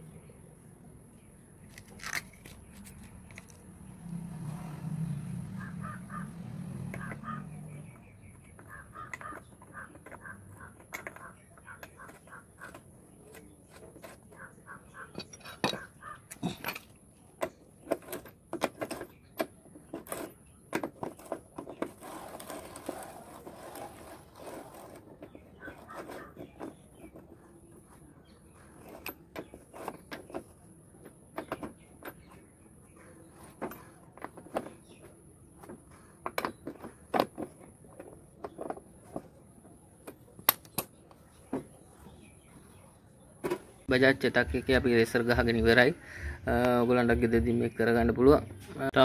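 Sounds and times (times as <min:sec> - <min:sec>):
metallic clicks and knocks: 0:08.4 - 0:14.4.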